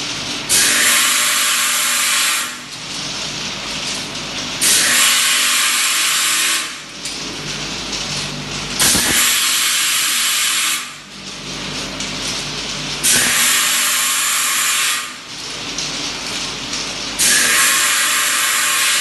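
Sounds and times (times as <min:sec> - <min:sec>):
machine mechanical running: 0:07.2 - 0:10.2.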